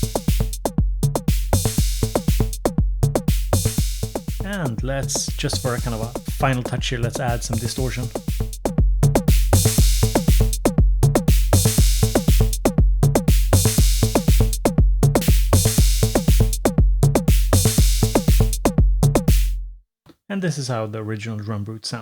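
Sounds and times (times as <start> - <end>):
hiss-like drum hit: 0.0 - 2.6, 3.2 - 8.6, 9.2 - 10.6, 11.2 - 12.6, 13.3 - 14.6, 15.2 - 16.6, 19.2 - 19.6
drum machine kick pattern: 0.0 - 19.8.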